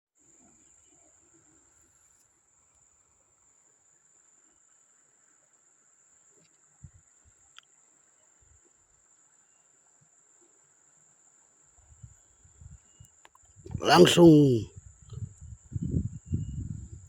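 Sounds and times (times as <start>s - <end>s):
faint high hiss: 13.8s - 14.6s.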